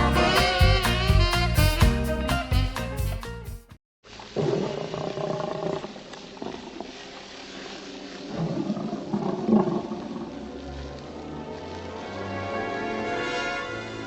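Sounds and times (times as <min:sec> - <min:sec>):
animal growling and roaring: 0:04.4 - 0:06.9, 0:08.3 - 0:11.2.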